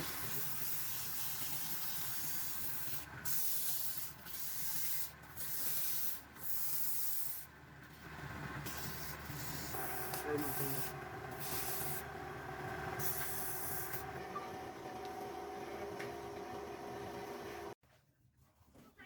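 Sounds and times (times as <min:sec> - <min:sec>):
wood scraping on a lathe: 0:08.9 - 0:17.8
lathe motor hum: 0:09.7 - 0:17.8.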